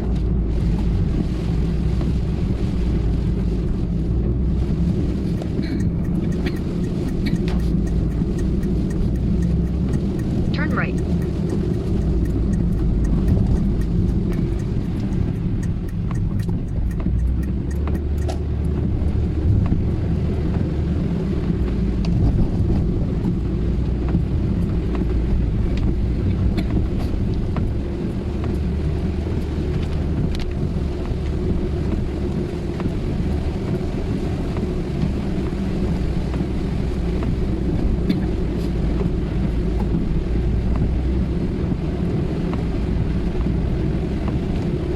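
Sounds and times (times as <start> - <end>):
road and engine rumble: 0.0 - 44.9
faint ticks: 5.3 - 18.8.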